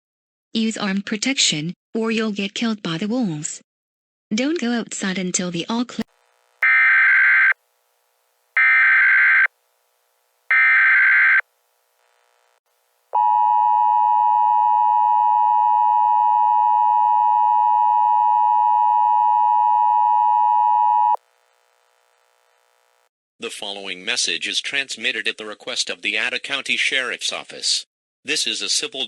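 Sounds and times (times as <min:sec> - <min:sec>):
raspy data screeches: 0:10.5 - 0:11.4.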